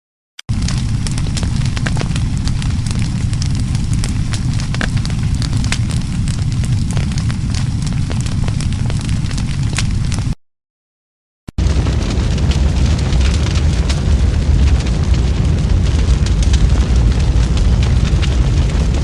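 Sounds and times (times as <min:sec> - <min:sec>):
fire crackling and popping: 0:00.4 - 0:10.4, 0:11.6 - 0:19.0
low rumble of flames: 0:00.5 - 0:10.4, 0:11.6 - 0:19.0.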